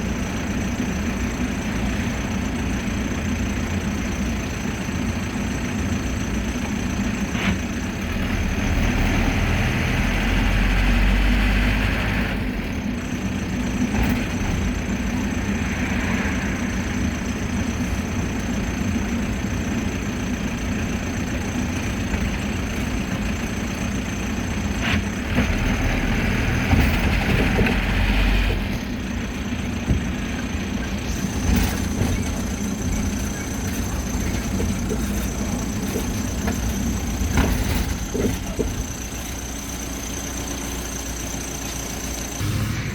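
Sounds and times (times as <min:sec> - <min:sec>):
minibus engine running: 0:00.0 - 0:42.9
road noise: 0:00.0 - 0:42.9
knocks and rattles: 0:31.1 - 0:39.3.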